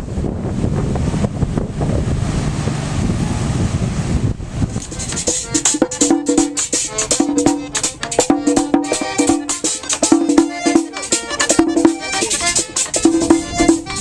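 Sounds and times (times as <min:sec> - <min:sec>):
pitched instrument notes: 0:04.8 - 0:14.0
quick percussion beat: 0:04.8 - 0:14.0.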